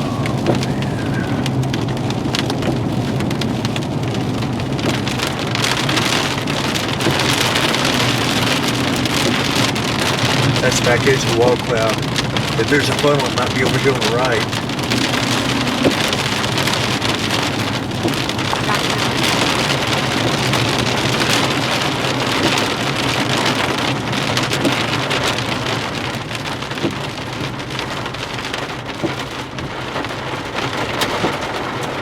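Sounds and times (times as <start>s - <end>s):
heavy rain on a vehicle: 0.0s - 32.0s
vehicle low hum: 6.8s - 22.3s.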